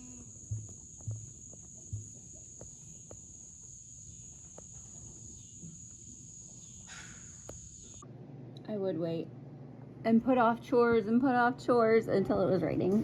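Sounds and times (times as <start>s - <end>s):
low thumps: 0.0s - 3.3s
night insect chorus: 0.0s - 8.0s.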